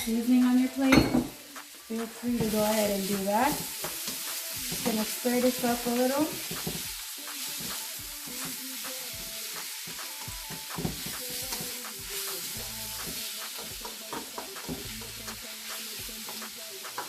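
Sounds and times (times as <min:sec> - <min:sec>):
chicken sizzling in a wok: 0:00.0 - 0:17.0.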